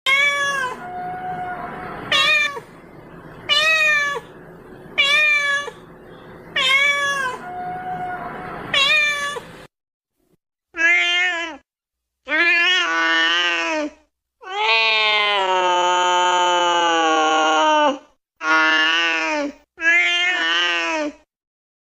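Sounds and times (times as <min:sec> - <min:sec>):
cat meowing: 0:00.1 - 0:02.7, 0:03.5 - 0:04.3, 0:05.0 - 0:05.8, 0:06.6 - 0:09.5, 0:10.8 - 0:11.6, 0:14.4 - 0:17.8, 0:19.8 - 0:20.8.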